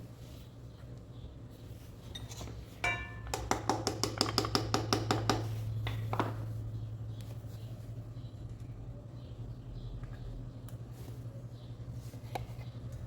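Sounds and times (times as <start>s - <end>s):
steady low hum: 0.0s - 3.5s.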